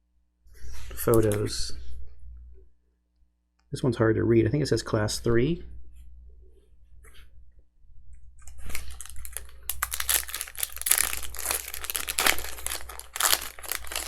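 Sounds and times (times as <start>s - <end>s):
plastic wrapper tearing and crinkling: 1.0s - 1.5s, 8.6s - 14.0s
cards clicking: 1.1s - 1.5s.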